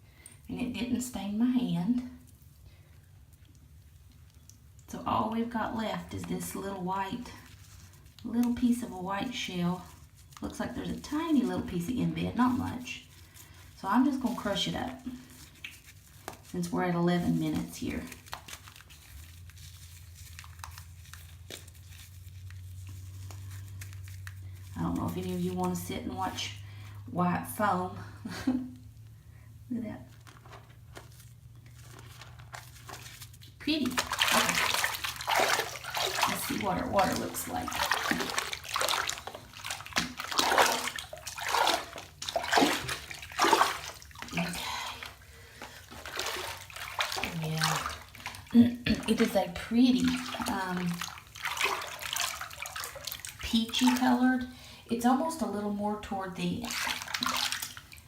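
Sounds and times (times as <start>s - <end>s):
bath bomb crackling and crunching: 12.4s - 25.8s, 29.9s - 54.2s.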